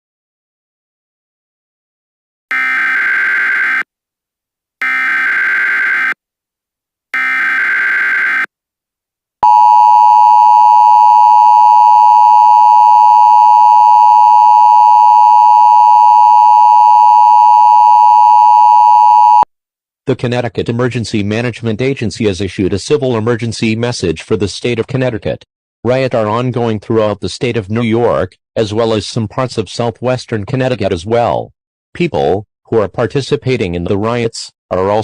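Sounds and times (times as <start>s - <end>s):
data tone bursts: 9.4s - 19.4s
two-tone attention signal: 9.4s - 19.4s.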